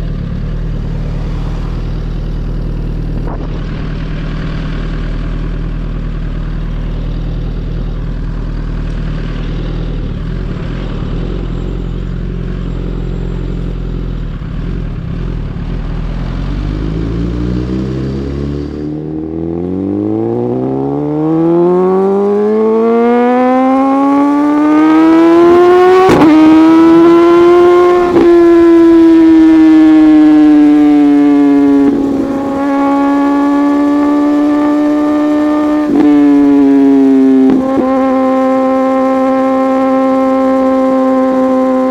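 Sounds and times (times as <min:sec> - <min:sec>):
motorcycle idling: 0:00.0 - 0:16.2, 0:29.8 - 0:35.7
motorcycle engine revving: 0:00.0 - 0:41.9.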